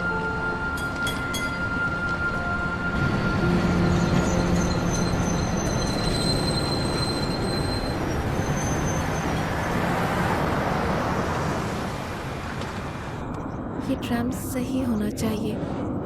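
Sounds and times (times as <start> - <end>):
tram rumbling on rails: 0.0 - 16.0
high-pitched wheel squeal: 3.1 - 9.8.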